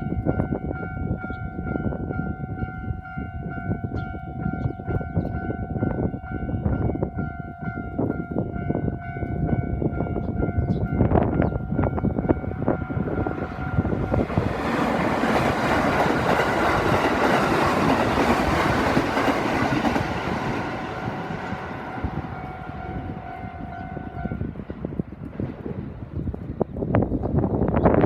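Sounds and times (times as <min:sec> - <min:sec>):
crossing warning bell ringing: 0:00.0 - 0:24.6
train passing: 0:00.0 - 0:27.8
wheels clacking over rail joints: 0:13.0 - 0:22.9.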